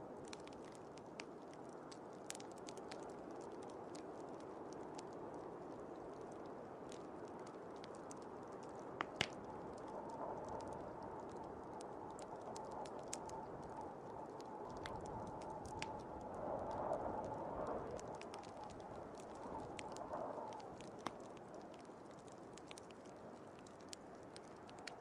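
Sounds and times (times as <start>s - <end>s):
wood fire crackling: 0.0s - 25.0s.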